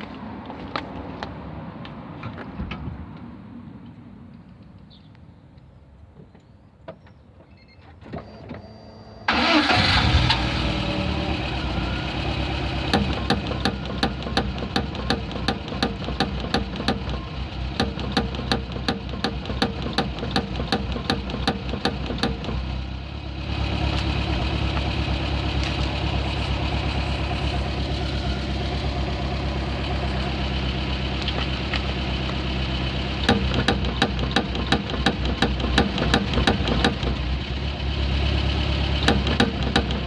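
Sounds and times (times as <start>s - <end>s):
car engine idling: 9.3s - 40.0s
rapid regular engine knocking: 11.6s - 22.8s, 23.4s - 40.0s.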